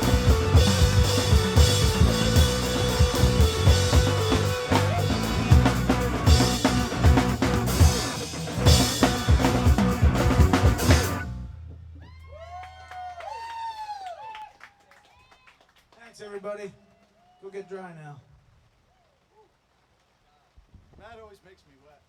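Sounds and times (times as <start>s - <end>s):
live rock band playing: 0.0s - 11.6s
drums hitting hard: 0.0s - 12.2s.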